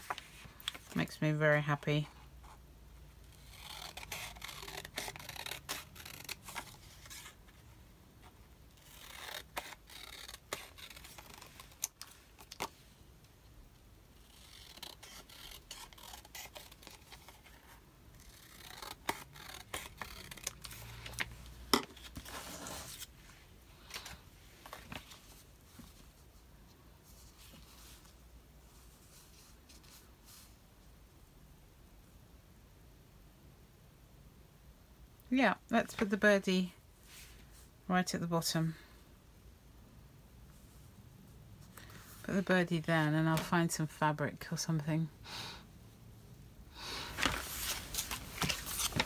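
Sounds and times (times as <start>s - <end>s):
scissors cutting paper: 3.4s - 7.2s, 8.8s - 12.0s, 14.3s - 17.5s, 18.2s - 20.8s
paper handling: 47.1s - 49.0s.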